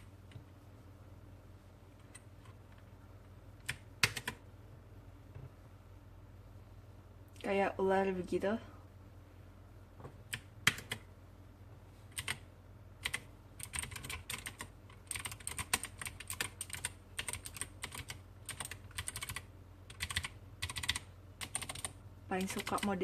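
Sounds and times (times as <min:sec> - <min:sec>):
mechanical keyboard typing: 0:03.6 - 0:04.4, 0:10.3 - 0:11.1, 0:12.2 - 0:12.4, 0:13.0 - 0:23.0.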